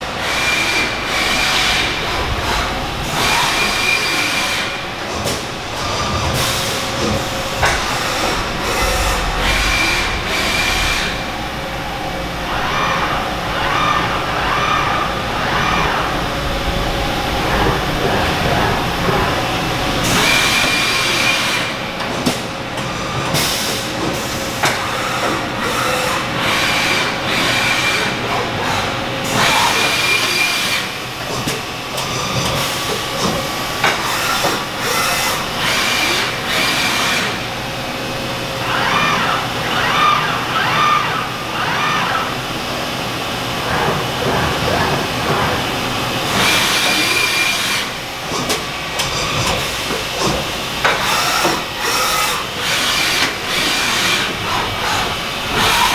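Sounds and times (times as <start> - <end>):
machine whine: 0.0 - 55.9.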